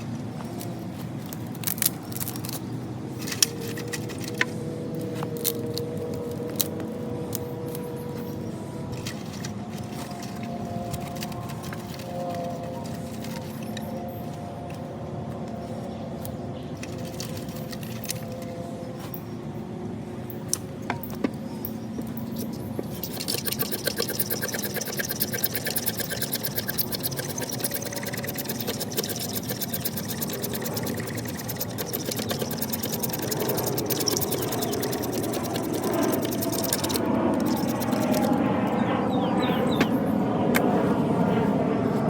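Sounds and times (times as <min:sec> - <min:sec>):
low steady hum: 0:00.0 - 0:42.0
knife scraping wood: 0:22.5 - 0:38.4.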